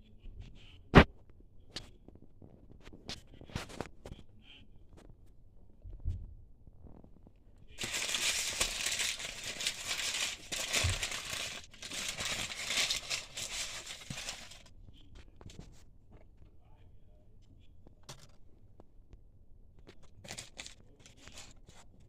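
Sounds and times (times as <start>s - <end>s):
paper packaging crinkling: 7.7s - 14.7s, 20.1s - 21.6s.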